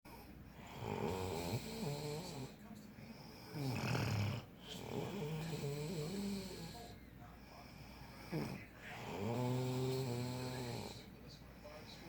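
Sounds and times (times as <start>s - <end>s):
person snoring: 0.6s - 2.6s, 3.5s - 6.9s, 8.2s - 11.1s.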